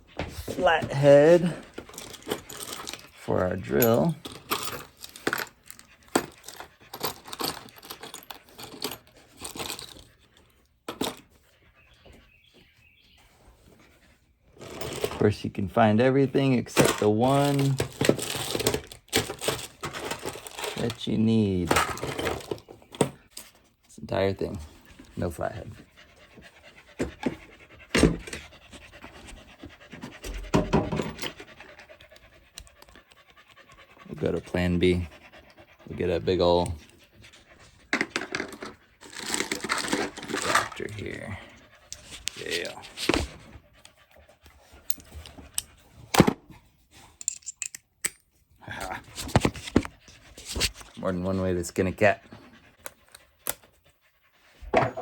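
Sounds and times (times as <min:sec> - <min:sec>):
metal drill bits clinking: 0:01.8 - 0:10.1, 0:47.2 - 0:48.3.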